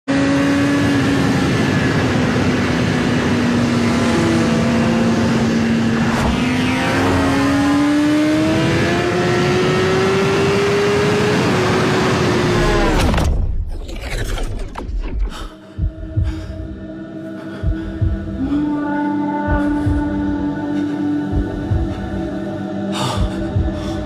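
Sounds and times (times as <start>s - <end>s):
synthesized motorbike engine: 0.1s - 13.2s.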